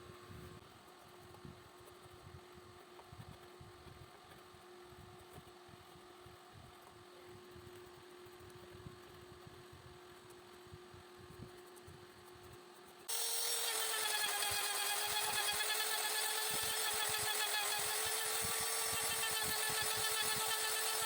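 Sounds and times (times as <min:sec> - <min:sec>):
power tool whining: 0:13.1 - 0:21.0.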